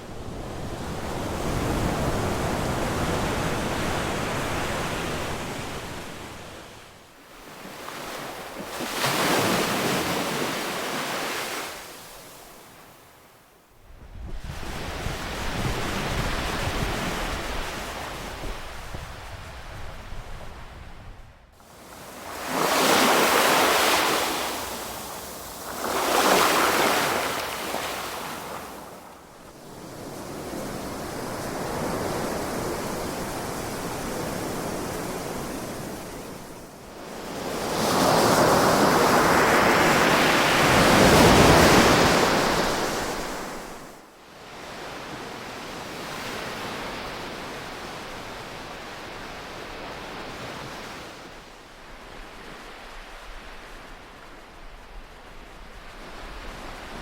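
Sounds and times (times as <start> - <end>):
ocean waves breaking: 7.3 - 12.6, 21.6 - 36.5.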